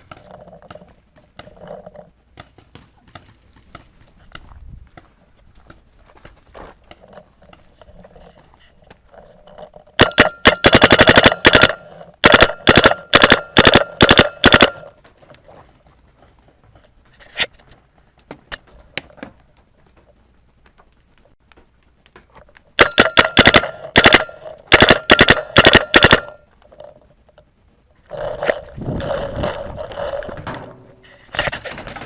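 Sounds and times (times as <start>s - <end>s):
paintball marker firing: 10.0s - 14.9s, 22.8s - 26.4s.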